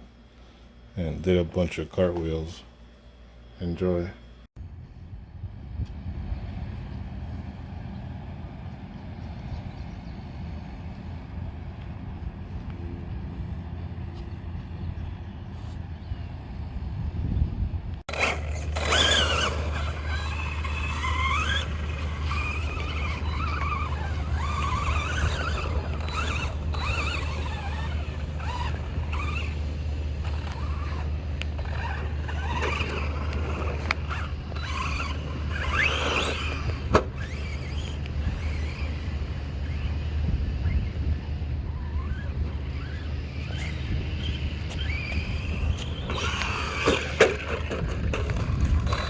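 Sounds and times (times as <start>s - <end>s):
electric motor whining: 18.0s - 49.0s.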